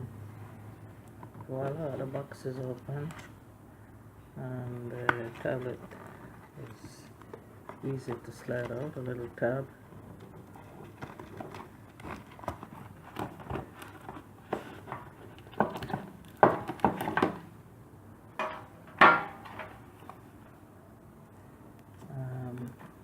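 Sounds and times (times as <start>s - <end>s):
cardboard packaging handled: 4.8s - 17.4s
packaging crinkles: 10.4s - 17.0s.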